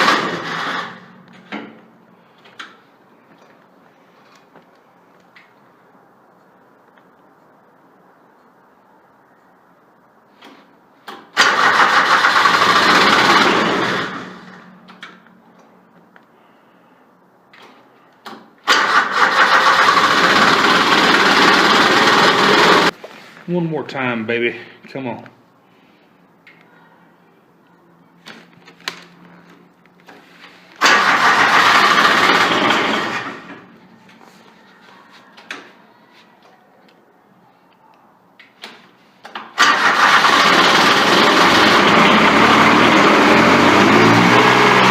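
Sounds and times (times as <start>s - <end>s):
starter cranking diesel engine: 0.0s - 1.1s, 11.4s - 14.6s, 18.7s - 22.9s, 30.8s - 33.7s, 39.6s - 44.9s.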